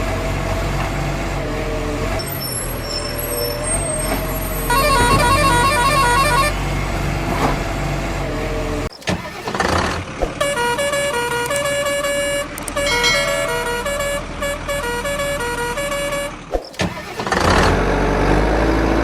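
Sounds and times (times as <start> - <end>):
electronic toy horn tune: 4.7 - 6.5, 10.4 - 16.4.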